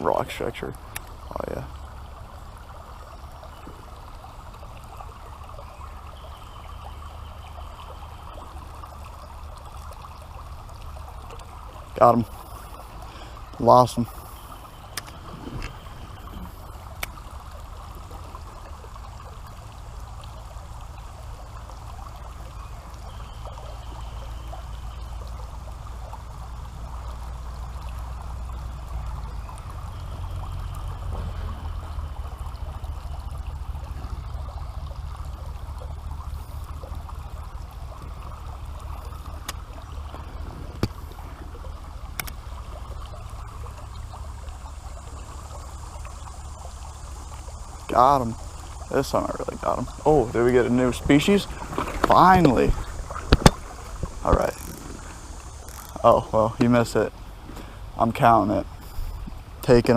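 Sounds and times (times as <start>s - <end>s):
creek water over rocks: 0.0s - 59.9s
low rumble: 26.3s - 59.6s
sharp clicks: 42.1s - 42.4s.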